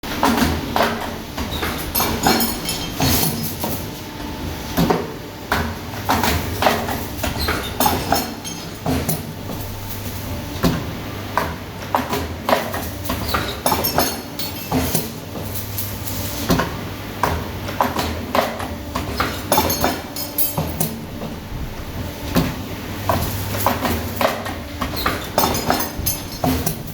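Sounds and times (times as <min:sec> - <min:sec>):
low motor hum: 0:21.0 - 0:23.6.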